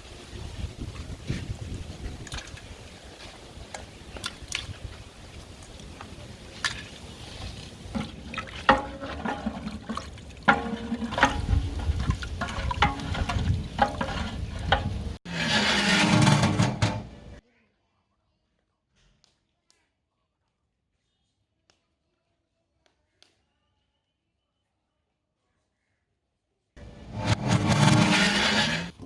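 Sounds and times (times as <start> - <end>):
ladle scraping a pot: 5.9 - 17.4, 26.9 - 29.0.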